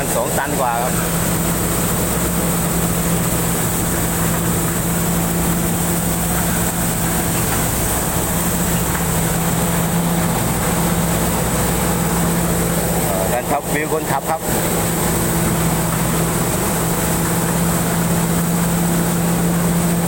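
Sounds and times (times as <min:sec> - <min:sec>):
combine harvester running: 0:00.0 - 0:20.0
machinery high whine: 0:00.0 - 0:20.0.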